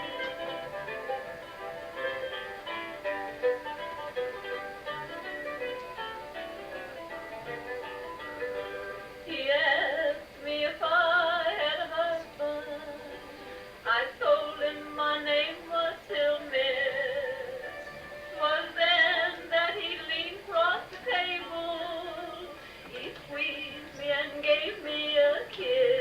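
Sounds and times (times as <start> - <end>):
sustained instrumental accompaniment: 0.0 - 9.3
person singing: 9.3 - 26.0.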